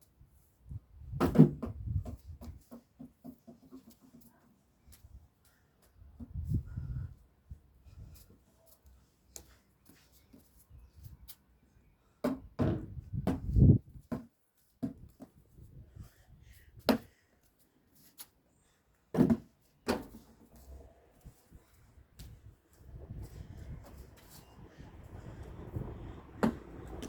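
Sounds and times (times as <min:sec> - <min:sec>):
ball thudding: 0:26.4 - 0:26.7.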